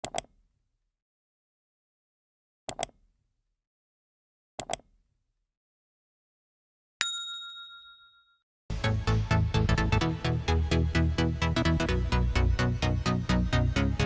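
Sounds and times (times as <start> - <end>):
bright bell ding: 7.0 - 8.4.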